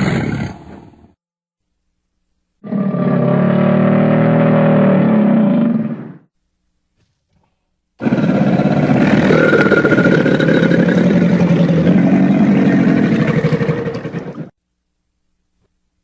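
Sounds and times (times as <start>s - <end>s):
crocodile growling: 8.0s - 14.5s.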